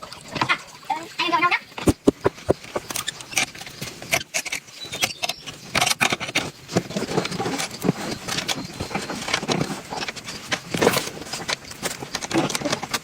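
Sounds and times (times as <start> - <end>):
hard objects clicking and knocking: 1.8 - 3.0.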